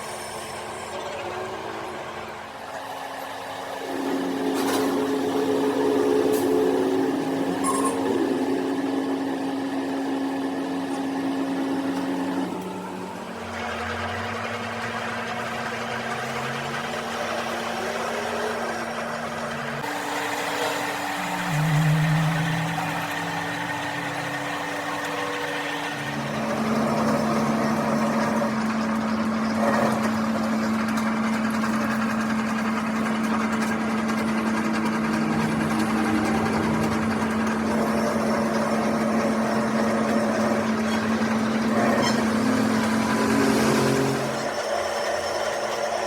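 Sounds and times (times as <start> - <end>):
electric motor humming: 15.4 - 44.7.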